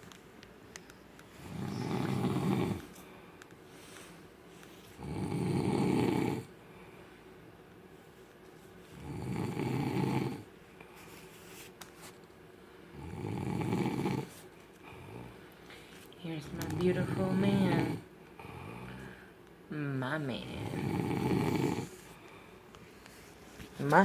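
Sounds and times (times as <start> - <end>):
room hiss: 0.0 - 24.0
man snoring loudly: 1.4 - 2.8, 5.0 - 6.5, 9.0 - 10.4, 13.0 - 14.3, 20.6 - 21.9
faint breathing: 14.7 - 16.2, 18.4 - 19.5, 21.8 - 23.6.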